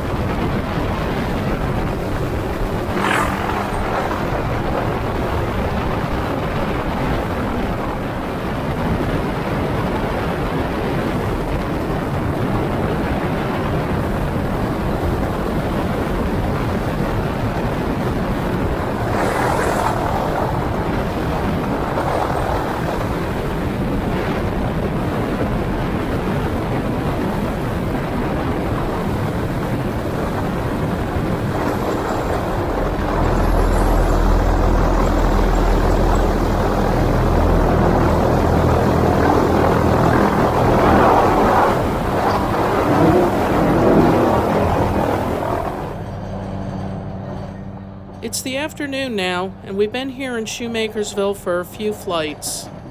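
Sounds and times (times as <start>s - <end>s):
helicopter rotor and turbine: 0.0s - 52.9s
low steady hum: 17.2s - 52.9s.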